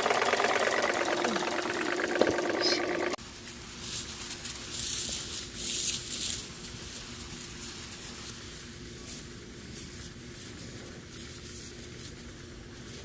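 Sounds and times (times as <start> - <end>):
faint steady hum: 0.0 - 3.9.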